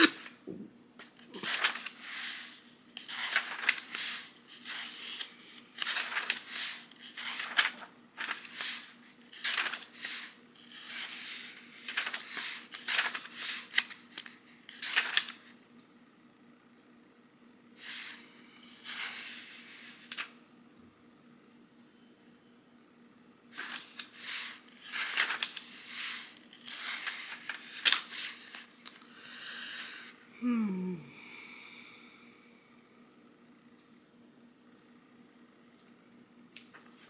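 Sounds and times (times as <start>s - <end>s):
book pages turning: 1.0s - 15.4s, 23.6s - 28.8s.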